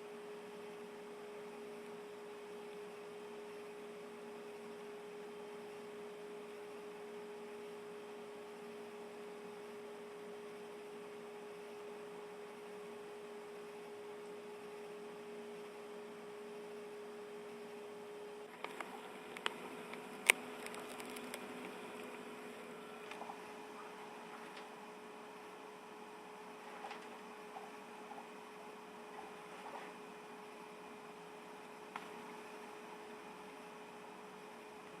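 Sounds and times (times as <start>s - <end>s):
low electrical hum: 0.0s - 35.0s
small sharp clicks: 18.6s - 22.2s.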